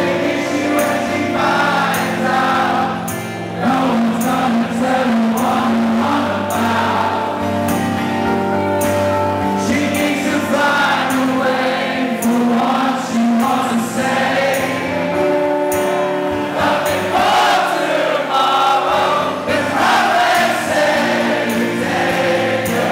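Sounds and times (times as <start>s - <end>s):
person singing: 0.0s - 8.7s, 9.4s - 22.9s
live rock band playing: 0.0s - 18.1s.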